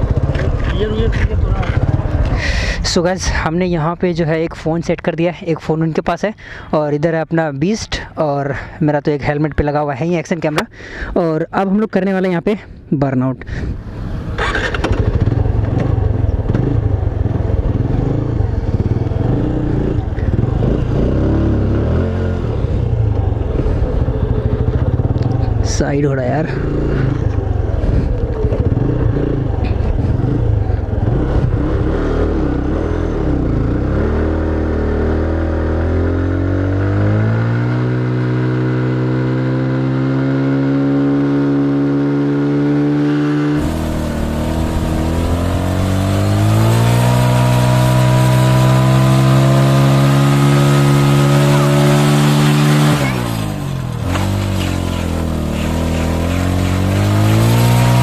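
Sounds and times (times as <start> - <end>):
motorcycle engine revving hard: 0.0 - 2.8, 14.2 - 25.7, 26.4 - 58.0.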